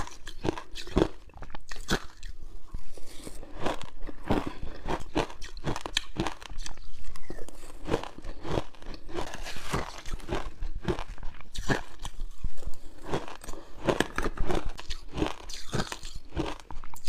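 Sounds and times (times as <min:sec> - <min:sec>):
frozen ice being bitten crunching: 0:00.0 - 0:17.0.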